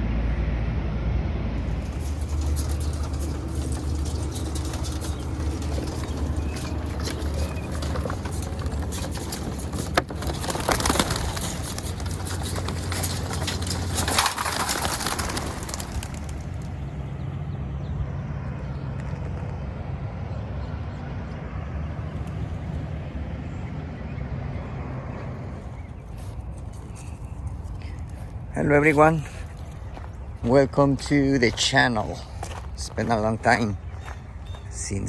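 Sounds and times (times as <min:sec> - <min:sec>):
pigeons cooing: 0:01.6 - 0:16.9.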